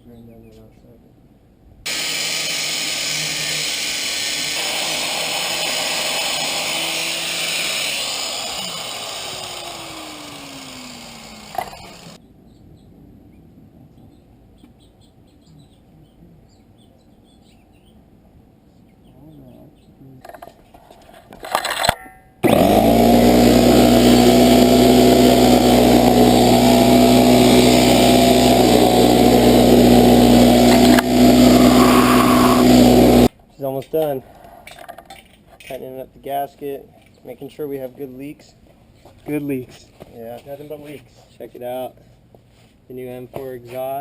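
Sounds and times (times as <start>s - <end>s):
grinder whining: 1.9s - 12.2s, 22.4s - 33.3s.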